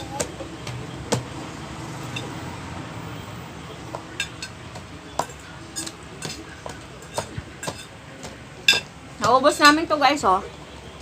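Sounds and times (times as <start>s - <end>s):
cutlery clinking on plate: 4.1s - 8.9s.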